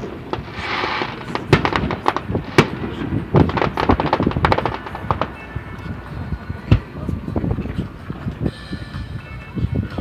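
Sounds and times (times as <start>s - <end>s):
fireworks popping and banging: 0.0s - 6.9s.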